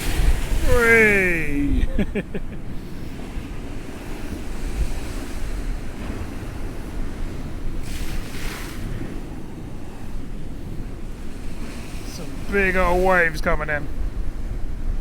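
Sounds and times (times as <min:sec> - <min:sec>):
wave crash with spray: 0:00.0 - 0:02.2
waves breaking against a wall: 0:00.0 - 0:15.0
wind buffeting microphone: 0:00.0 - 0:15.0.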